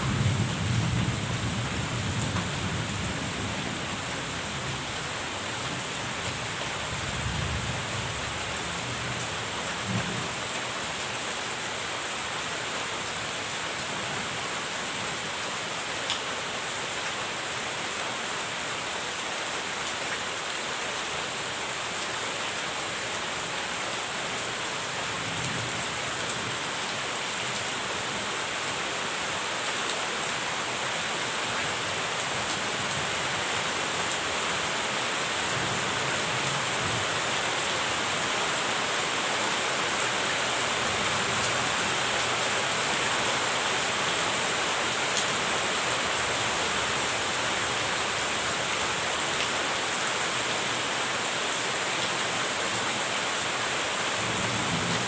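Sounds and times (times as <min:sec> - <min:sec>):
rain falling: 0:00.0 - 0:55.0.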